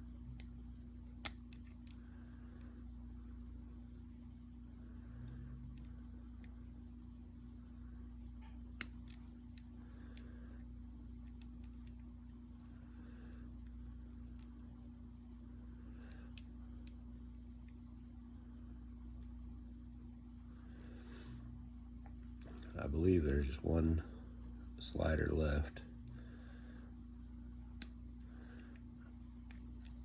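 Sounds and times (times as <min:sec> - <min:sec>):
lock-picking tools clicking: 0:01.2 - 0:02.0.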